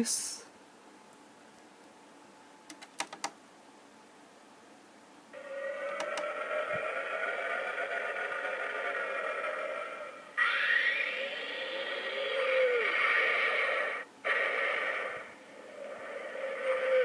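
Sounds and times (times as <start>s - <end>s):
droning starship sound effect: 5.4s - 17.0s.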